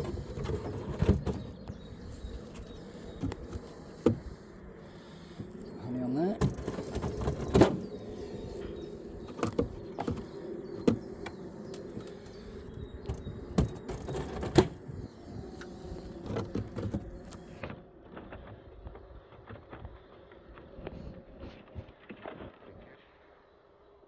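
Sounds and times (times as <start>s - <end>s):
wooden hive boxes knocking: 0.0s - 4.4s, 6.2s - 8.0s, 8.7s - 14.9s.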